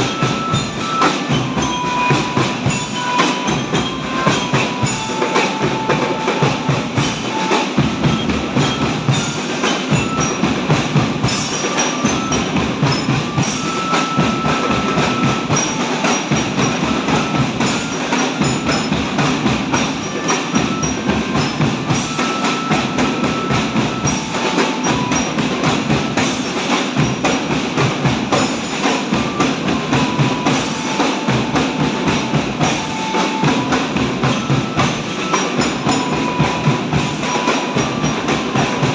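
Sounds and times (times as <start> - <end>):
rapid drum strokes: 0.0 - 38.9.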